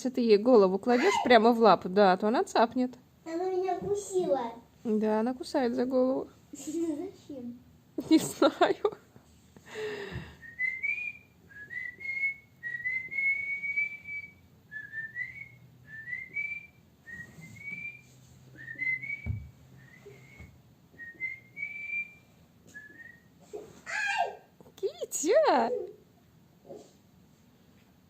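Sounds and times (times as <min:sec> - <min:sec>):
person whistling short notes: 0:18.6 - 0:23.3.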